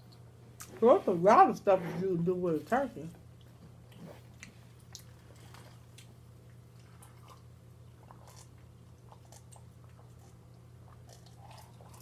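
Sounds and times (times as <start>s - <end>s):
steady low hum: 0.0s - 12.0s
person chewing: 3.4s - 12.0s.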